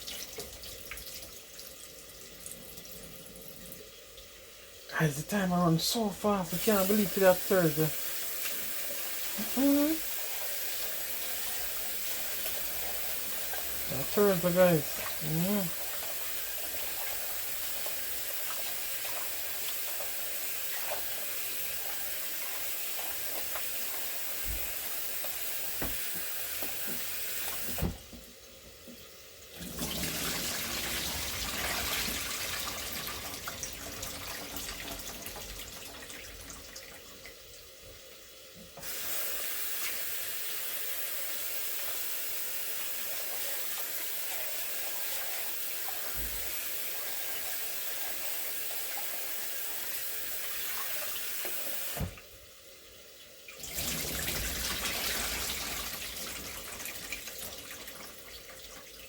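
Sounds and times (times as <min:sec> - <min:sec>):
water running from tap into sink: 0:00.0 - 0:59.0.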